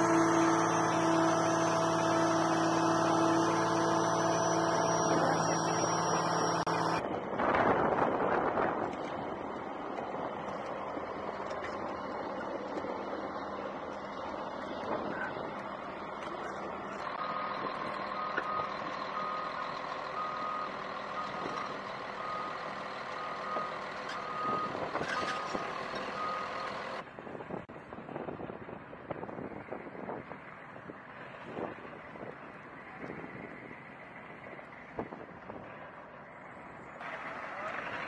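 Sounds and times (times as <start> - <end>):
reversing alarm beeping: 0.0 - 7.0, 17.1 - 21.6, 22.2 - 26.6
heavy vehicle engine running: 0.0 - 38.0.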